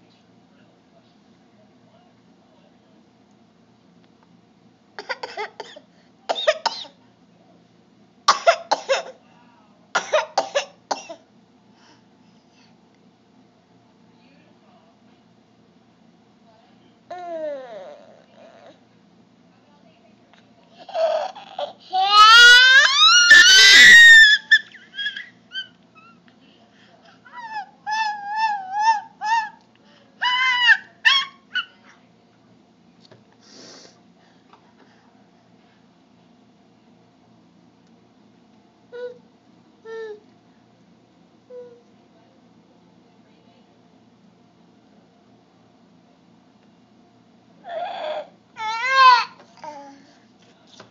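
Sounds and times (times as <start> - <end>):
person making cough-like vocal noises: 8.3 - 9.2, 10.0 - 11.2.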